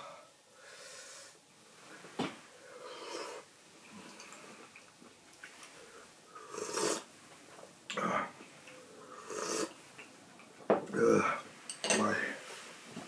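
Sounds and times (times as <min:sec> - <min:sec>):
person slurping and blowing: 0:02.9 - 0:03.5, 0:06.4 - 0:07.1, 0:09.0 - 0:09.8.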